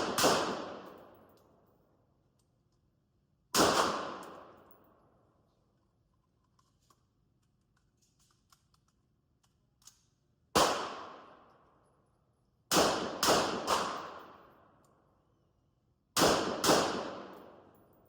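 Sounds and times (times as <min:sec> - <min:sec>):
gunshots echoing indoors: 0:00.0 - 0:01.4, 0:03.5 - 0:04.8, 0:10.6 - 0:11.7, 0:12.7 - 0:14.6, 0:16.2 - 0:17.9
gun handling clicks: 0:06.1 - 0:10.2.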